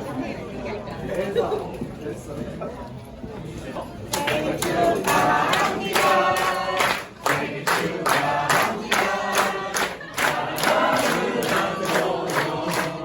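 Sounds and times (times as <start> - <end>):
many voices singing together: 4.1 - 13.0.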